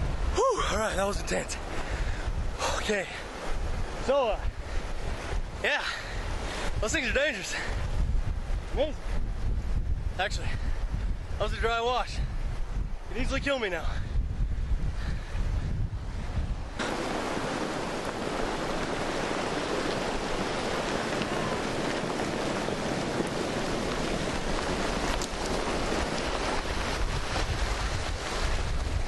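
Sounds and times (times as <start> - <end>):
floodwater rushing: 0.0 - 7.8, 16.6 - 29.0
wind buffeting microphone: 0.0 - 29.0.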